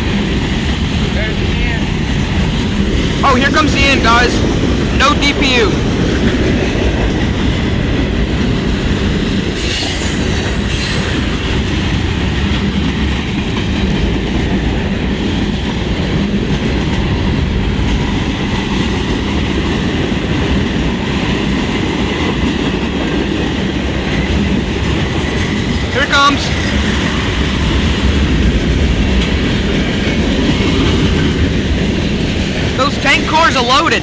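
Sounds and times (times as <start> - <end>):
train wheels rumbling on rails: 0.0 - 34.0
wheel squeal: 9.5 - 11.9.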